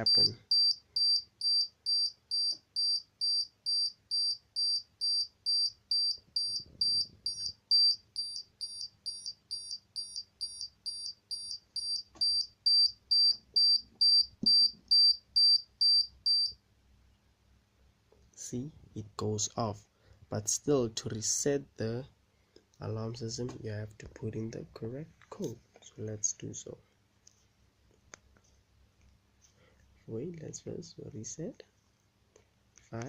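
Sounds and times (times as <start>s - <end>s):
high-pitched buzzer beeps: 0.0s - 16.6s.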